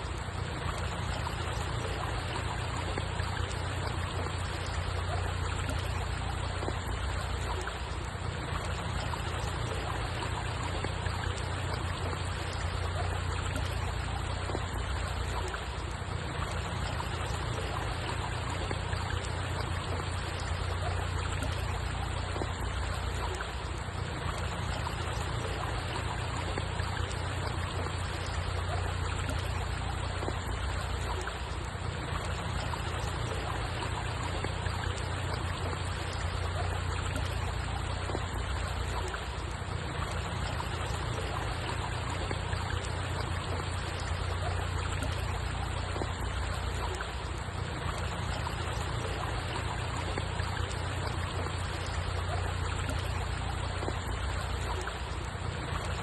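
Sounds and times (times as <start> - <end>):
water trickling: 0.0 - 56.0.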